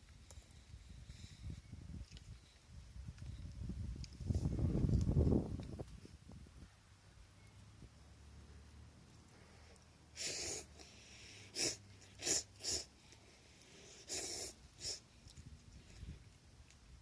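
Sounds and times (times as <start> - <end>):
airy bursts of breath: 9.3 - 15.1.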